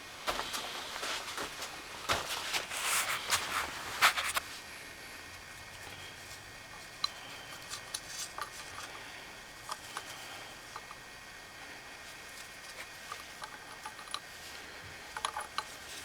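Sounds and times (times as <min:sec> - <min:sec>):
rustling clatter: 0:00.3 - 0:04.5.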